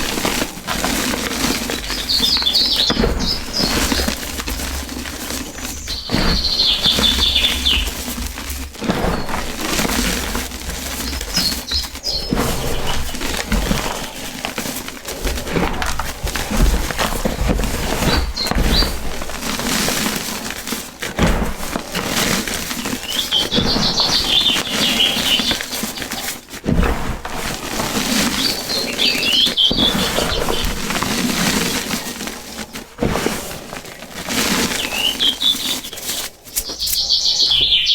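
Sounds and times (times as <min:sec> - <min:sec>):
crunching and grinding of gritty block: 0:00.0 - 0:37.9
bird chirps: 0:01.5 - 0:04.6, 0:05.5 - 0:08.0, 0:11.0 - 0:14.4, 0:23.0 - 0:25.7, 0:28.4 - 0:30.7, 0:34.7 - 0:37.9.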